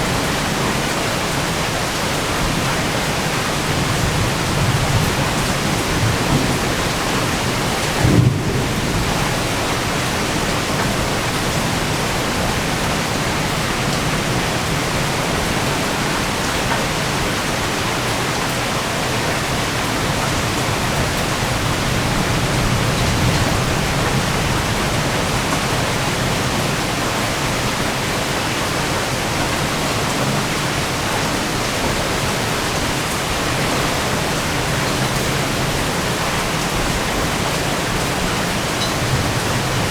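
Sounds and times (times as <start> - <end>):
heavy rain: 0.0 - 39.9
thunder rumbling: 3.6 - 11.4.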